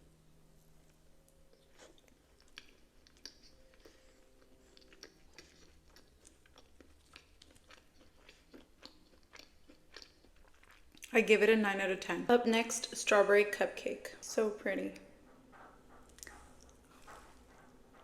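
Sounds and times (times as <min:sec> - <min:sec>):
low hum: 0:00.0 - 0:06.8
close-up chewing with crunches: 0:01.5 - 0:11.2, 0:15.0 - 0:18.0.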